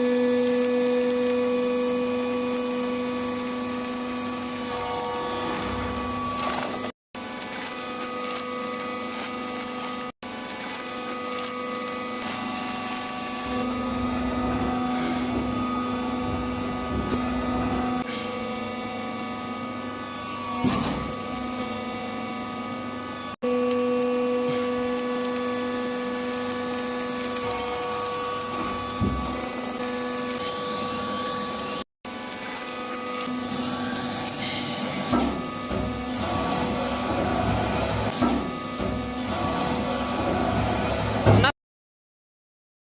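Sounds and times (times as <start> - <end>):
baling machine motor hum: 0.0 - 41.5.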